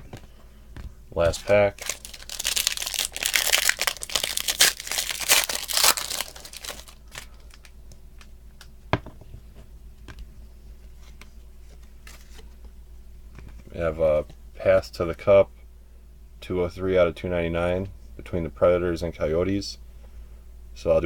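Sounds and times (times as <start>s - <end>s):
cards rustling and clicking: 1.2s - 8.3s, 10.9s - 12.6s
wrapper tearing and crinkling: 1.4s - 7.7s.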